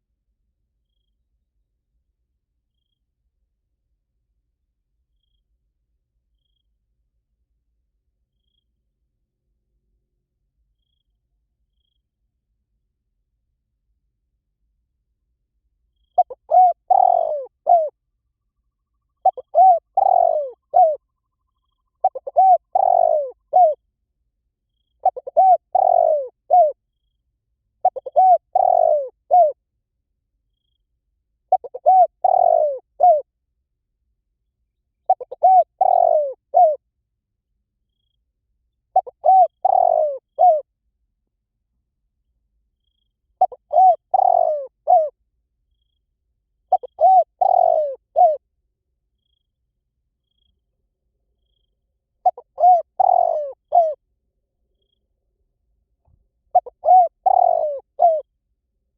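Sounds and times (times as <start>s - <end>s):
dove cooing: 16.2s - 18.0s, 19.2s - 21.0s, 22.0s - 23.8s, 25.0s - 26.8s, 27.8s - 29.6s, 31.5s - 33.3s, 35.1s - 36.8s, 38.9s - 40.7s, 43.4s - 45.2s, 46.7s - 48.4s, 52.2s - 54.0s, 56.5s - 58.3s.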